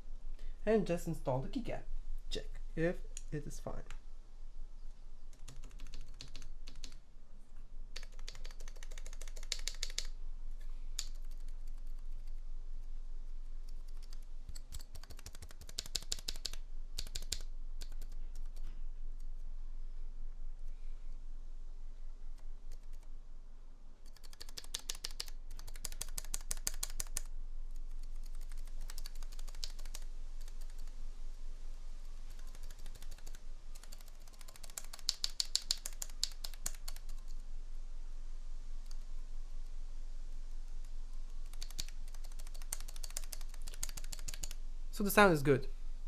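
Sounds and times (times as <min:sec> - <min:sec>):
mechanical keyboard key clicks: 0:32.4 - 0:37.1.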